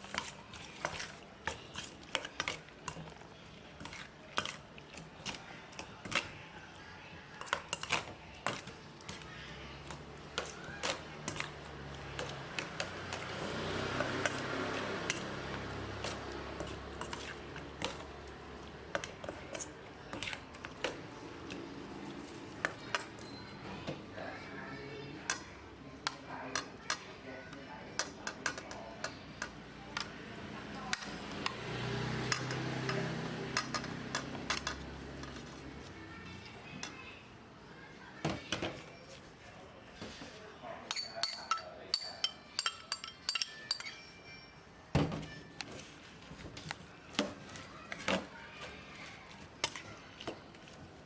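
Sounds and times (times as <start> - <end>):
utensils clinking against dishes: 0.0 - 6.5, 7.3 - 23.9, 25.2 - 30.2, 32.2 - 35.8, 40.8 - 44.6.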